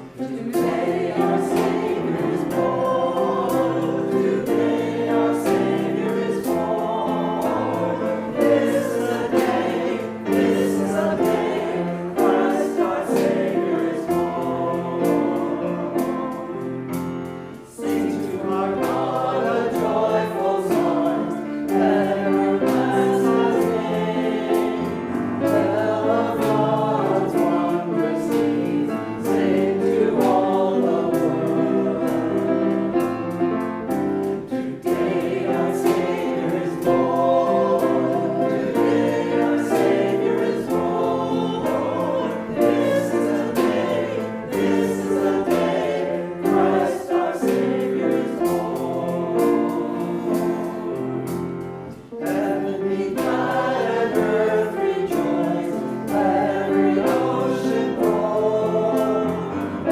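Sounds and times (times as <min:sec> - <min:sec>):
church choir singing: 0:00.0 - 0:59.9.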